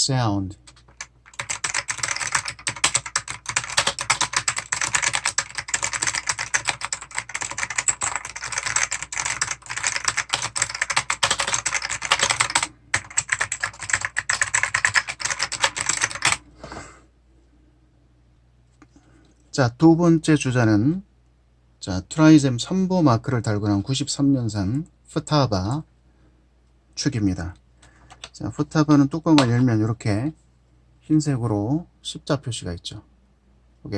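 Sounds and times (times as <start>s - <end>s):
fast keyboard typing: 0.6s - 16.4s.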